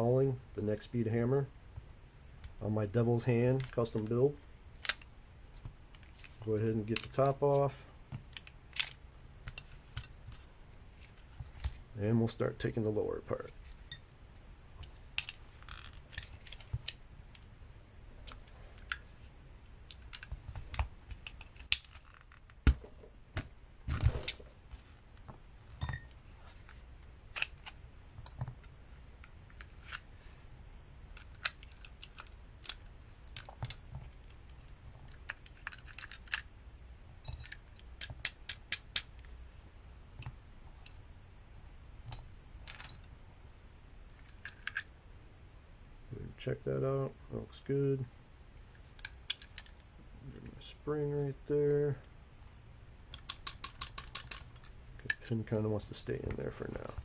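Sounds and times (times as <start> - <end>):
clicks and knocks of pistol parts: 4.8 - 10.5, 19.9 - 24.5, 26.4 - 27.8, 31.1 - 36.5, 37.2 - 39.3, 44.2 - 44.9, 48.8 - 49.8, 53.1 - 55.5.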